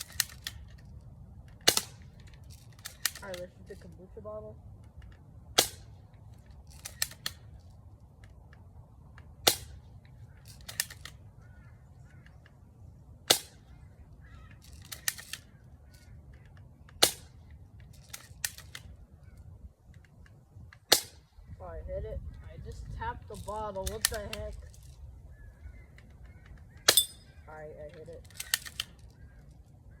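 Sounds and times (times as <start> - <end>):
bb gun shots cracking: 1.6 - 3.5, 5.5 - 6.1, 9.4 - 9.8, 13.3 - 13.8, 17.0 - 17.4, 20.8 - 21.3.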